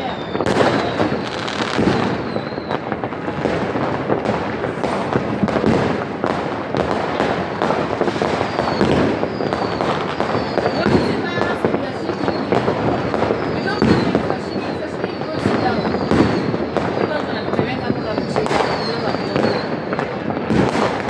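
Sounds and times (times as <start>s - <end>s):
faint falling whistles: 0.0s - 3.0s, 8.2s - 19.8s
fireworks bangs and crackles: 0.0s - 21.0s.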